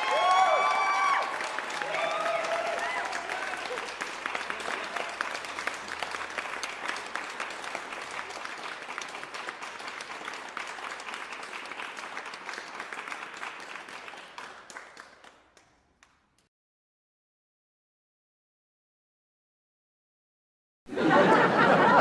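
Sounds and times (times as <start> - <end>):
crowd applauding: 0.0 - 16.2, 20.9 - 22.0.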